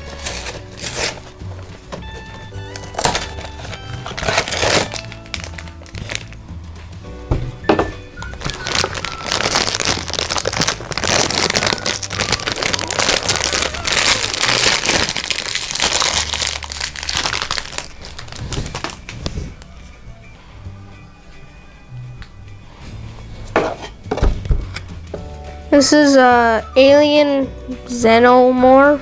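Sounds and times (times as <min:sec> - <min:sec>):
packaging crinkling and rustling: 0:00.0 - 0:06.4, 0:08.2 - 0:19.7
background music: 0:00.0 - 0:29.0.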